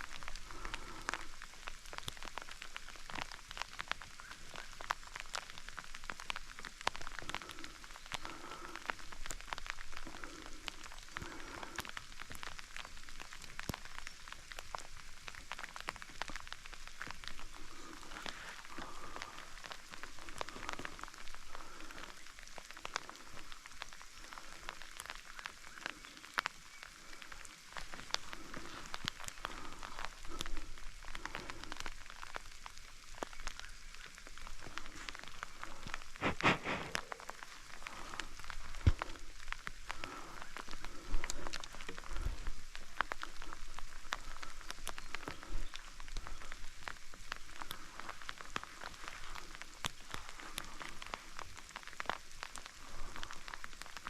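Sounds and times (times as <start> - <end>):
rain drops pattering: 0.0 - 54.0
brushing rustle: 36.1 - 37.4.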